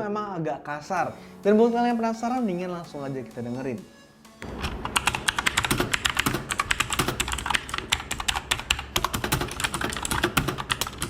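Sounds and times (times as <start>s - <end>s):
clicky keyboard typing: 4.6s - 11.0s.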